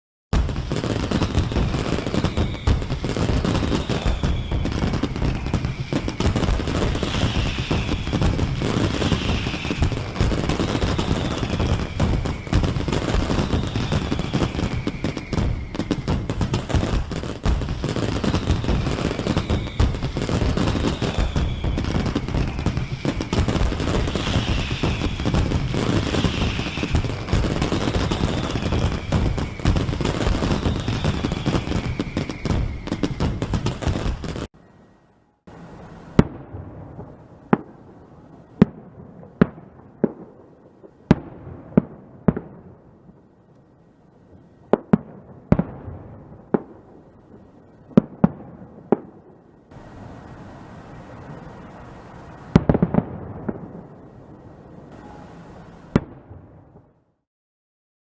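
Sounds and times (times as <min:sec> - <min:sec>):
fireworks bangs and crackles: 0:00.3 - 0:34.5, 0:35.5 - 0:57.1
high falling whistles: 0:00.6 - 0:35.6, 0:54.9 - 0:55.9.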